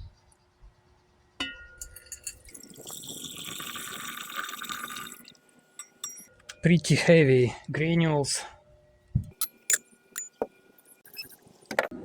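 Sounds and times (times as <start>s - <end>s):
glassware clicking: 1.4s - 2.8s, 5.8s - 6.3s, 9.3s - 10.5s
liquid pouring: 2.0s - 5.4s.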